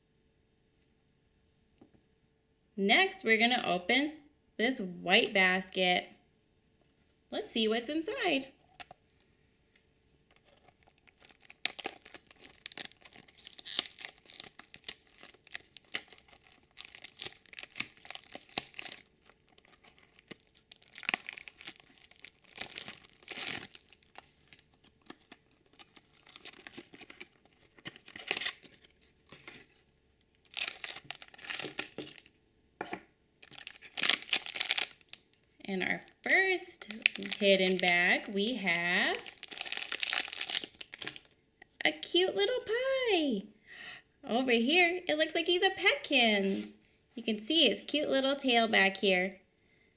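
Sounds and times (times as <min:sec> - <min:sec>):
packaging crinkling and tearing: 0:10.3 - 0:32.4, 0:33.4 - 0:35.4, 0:36.0 - 0:41.4.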